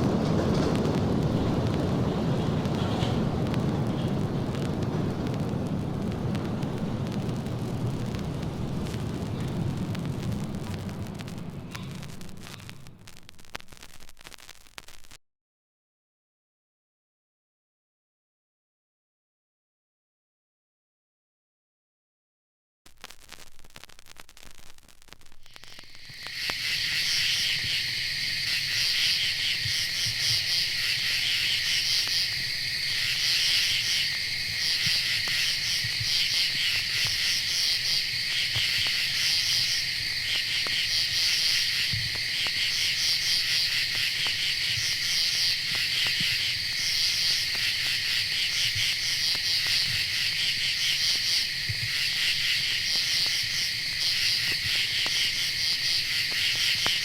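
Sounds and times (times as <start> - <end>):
crickets chirping: 25.4 - 57.0.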